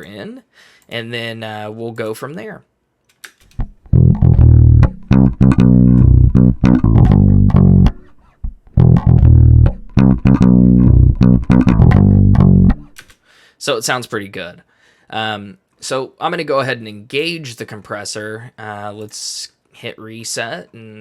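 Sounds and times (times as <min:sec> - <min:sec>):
bass guitar plucked riff: 0:03.6 - 0:13.0.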